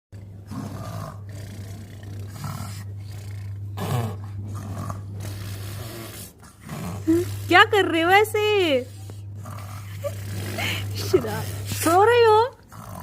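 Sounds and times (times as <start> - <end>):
child pretending to snore: 5.2 - 7.5, 9.5 - 12.0.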